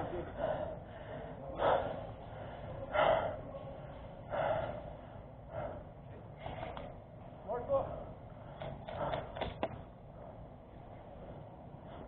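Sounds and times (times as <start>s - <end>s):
person breathing heavily: 0.0s - 12.0s.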